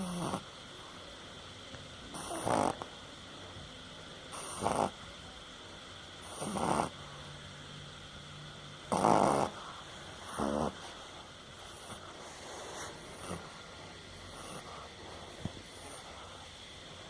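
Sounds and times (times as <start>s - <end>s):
dog snoring: 0.0s - 0.6s, 2.1s - 3.0s, 4.3s - 5.0s, 6.2s - 7.0s, 8.9s - 16.5s.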